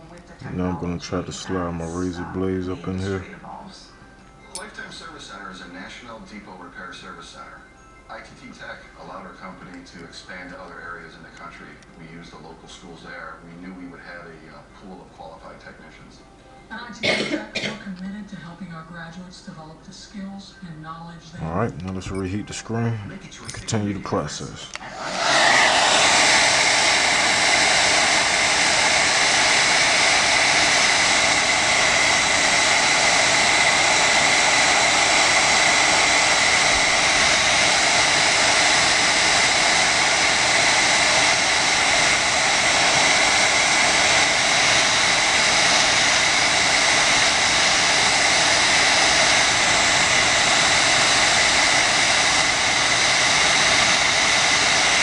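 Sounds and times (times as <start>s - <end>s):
hair dryer blowing: 0.0s - 3.3s, 23.8s - 55.0s.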